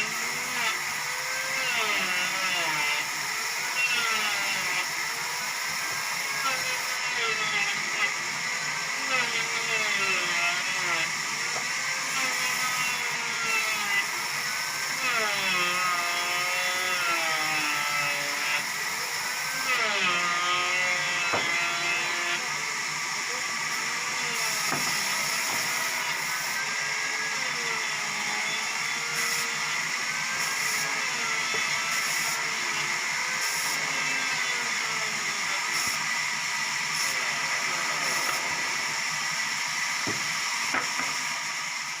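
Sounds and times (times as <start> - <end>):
sawmill saw whining through wood: 0.0 - 42.0.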